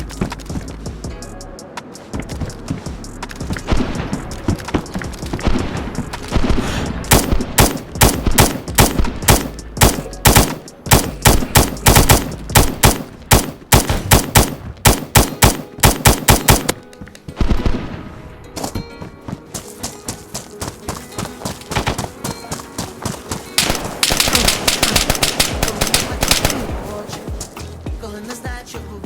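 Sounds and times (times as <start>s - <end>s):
rapid sharp bangs: 3.6s - 16.8s, 23.6s - 27.6s.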